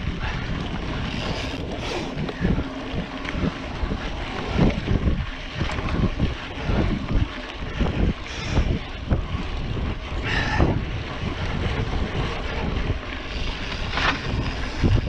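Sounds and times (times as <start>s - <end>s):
bike tyres rumbling on dirt: 0.0s - 15.0s
wind buffeting microphone: 0.0s - 15.0s.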